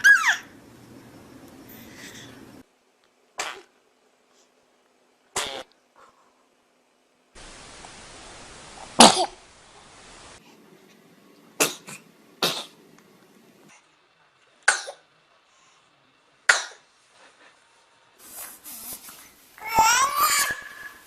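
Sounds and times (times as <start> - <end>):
baby sneezing: 3.4 - 3.7, 5.4 - 5.7, 9.0 - 9.4, 16.5 - 16.8.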